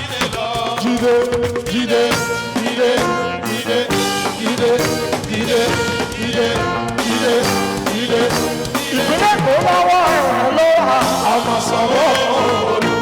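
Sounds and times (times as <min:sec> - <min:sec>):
drums: 0:00.0 - 0:13.0
brass section playing chords: 0:01.9 - 0:13.0.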